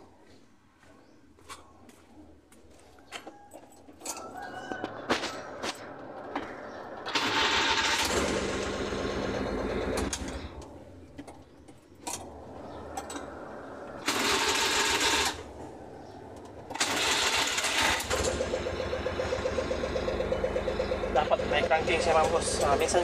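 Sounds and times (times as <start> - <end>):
engine cranking by starter: 4.8 - 23.0.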